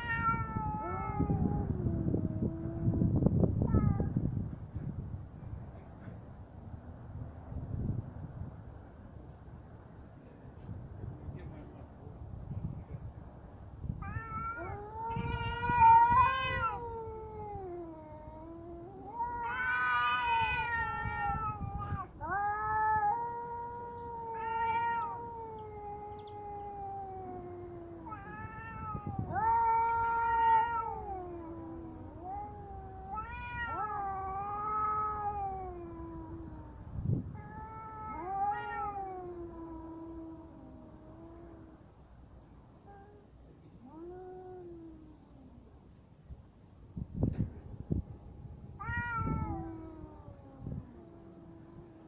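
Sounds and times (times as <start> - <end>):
cats yowling: 0.0 - 4.2, 14.0 - 41.9, 42.8 - 45.7, 47.9 - 52.0.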